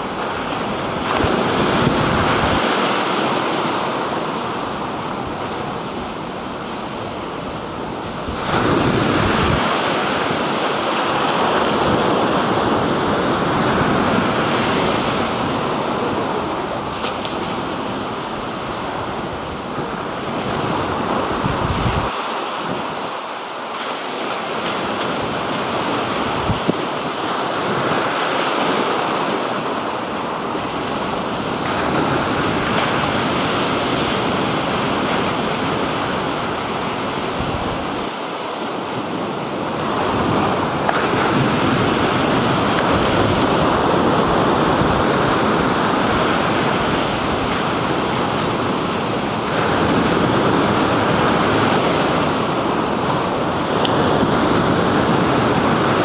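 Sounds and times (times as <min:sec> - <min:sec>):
wind buffeting microphone: 0:00.0 - 0:03.3, 0:04.7 - 0:17.0, 0:18.6 - 0:23.1, 0:25.2 - 0:28.0
waves breaking on shore: 0:00.0 - 0:56.0.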